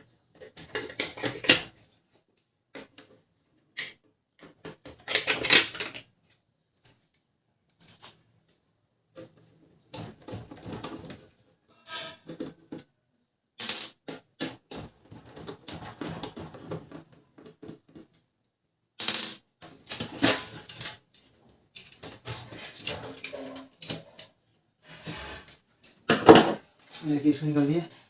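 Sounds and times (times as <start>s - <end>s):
printer parts clicking and rattling: 0.3s - 1.8s, 2.7s - 8.3s.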